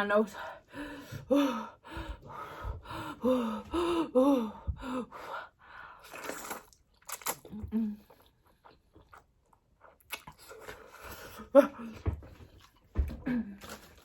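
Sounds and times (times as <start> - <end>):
woman chewing and crunching food: 5.9 - 11.6, 12.4 - 14.0.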